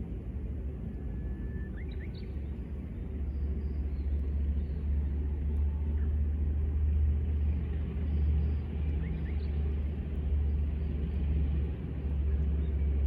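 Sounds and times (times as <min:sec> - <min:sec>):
bird song: 0:01.2 - 0:06.0, 0:07.5 - 0:13.0.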